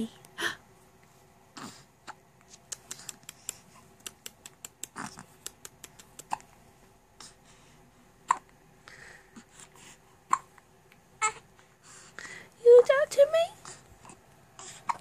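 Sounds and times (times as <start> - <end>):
quick little clicks: 2.6 - 6.4
baby hiccups: 10.3 - 10.5.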